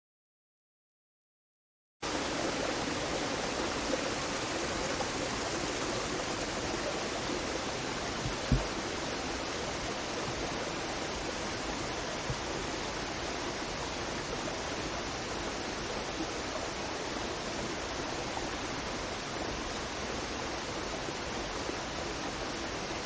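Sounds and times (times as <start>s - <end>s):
waterfall rushing: 2.0s - 23.0s
dull thump: 8.2s - 8.7s.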